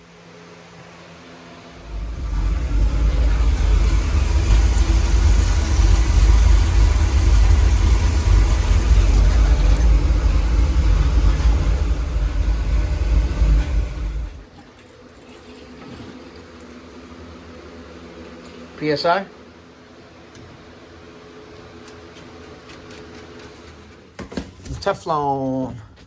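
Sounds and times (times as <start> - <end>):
truck engine rumbling: 1.7 - 14.5.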